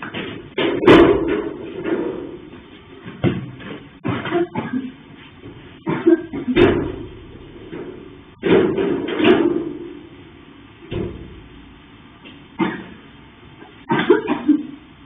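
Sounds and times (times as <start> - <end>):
loud knocks and bangs ringing: 0.5 - 2.4, 6.5 - 10.0.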